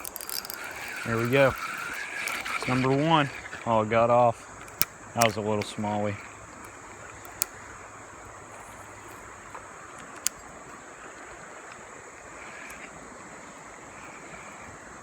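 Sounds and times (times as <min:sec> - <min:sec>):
river water over rocks: 0:00.0 - 0:15.0
sharp click: 0:04.4 - 0:10.8.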